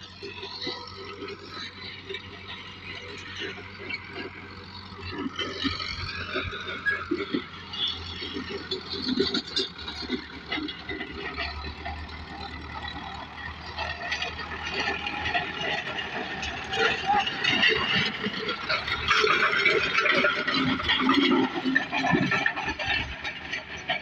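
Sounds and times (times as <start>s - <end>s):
tractor engine running: 0.0s - 24.0s.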